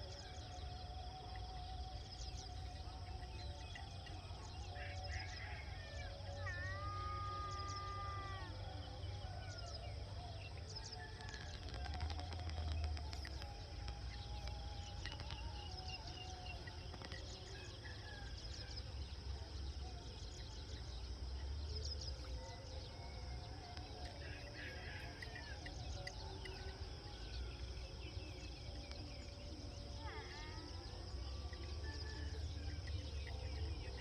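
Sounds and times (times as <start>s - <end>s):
high insect drone: 0.0s - 34.0s.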